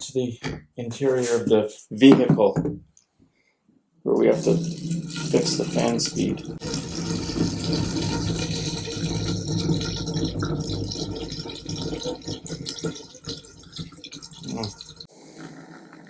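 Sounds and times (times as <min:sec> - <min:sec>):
fluid splashing pour: 0:04.2 - 0:15.1.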